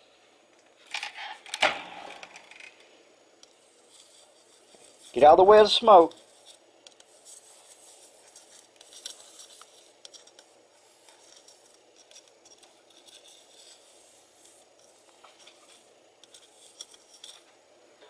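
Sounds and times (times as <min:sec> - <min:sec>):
soldering tip scratching on metal: 0:03.4 - 0:17.6.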